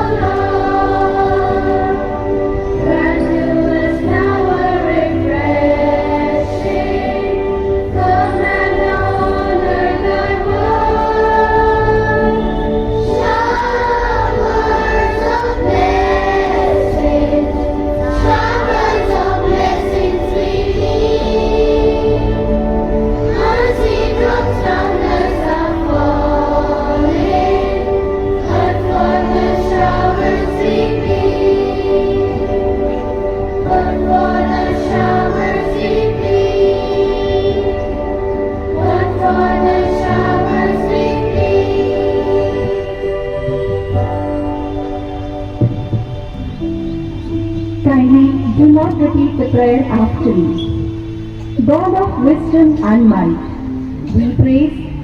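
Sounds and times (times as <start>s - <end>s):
choir singing: 0.0s - 55.0s
instrumental accompaniment: 0.0s - 55.0s.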